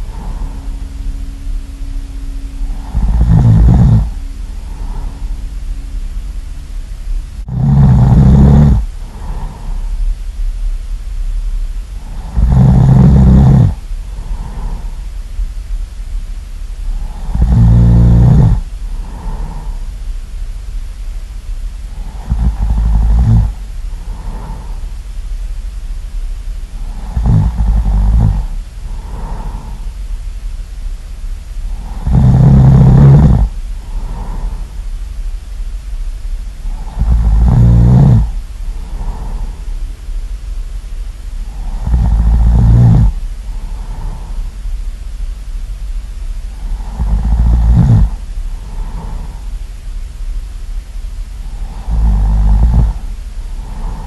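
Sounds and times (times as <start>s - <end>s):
person snoring loudly: 0.0s - 0.8s, 2.6s - 5.4s, 7.5s - 9.9s, 12.0s - 15.0s, 16.9s - 19.8s, 21.9s - 24.8s, 26.8s - 29.8s, 31.7s - 34.7s, 36.6s - 39.6s, 41.4s - 44.5s, 46.5s - 49.5s, 51.4s - 54.0s.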